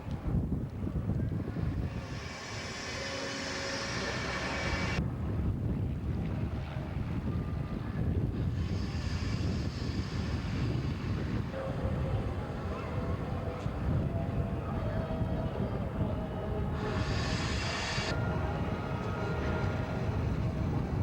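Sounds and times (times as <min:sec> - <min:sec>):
wind rumbling on microphone: 0:00.0 - 0:21.0
engine drone: 0:01.7 - 0:05.0.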